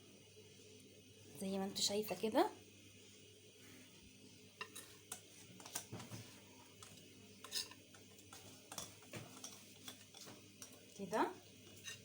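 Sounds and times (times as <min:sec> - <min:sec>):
utensil scraping a bowl: 0:07.4 - 0:10.8, 0:11.6 - 0:12.0.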